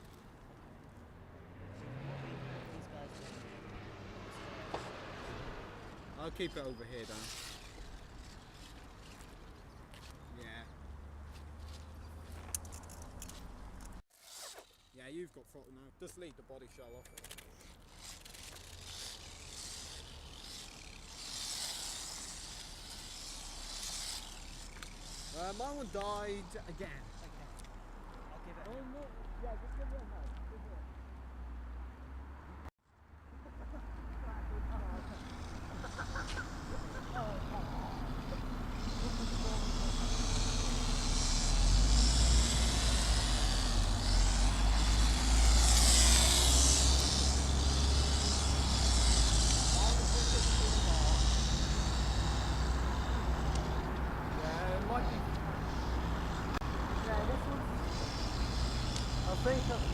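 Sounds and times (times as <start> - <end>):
radio-controlled car motor hiss: 4.6 - 9.4, 17.2 - 27.8, 34.7 - 59.9.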